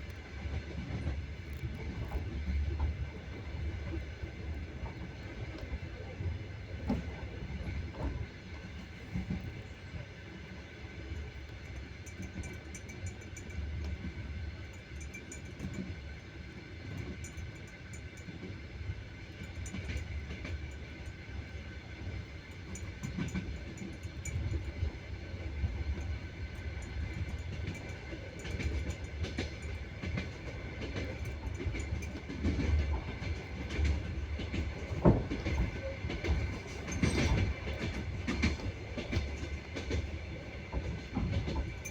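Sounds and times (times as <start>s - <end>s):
train wheels clattering on rails: 0.0s - 41.9s.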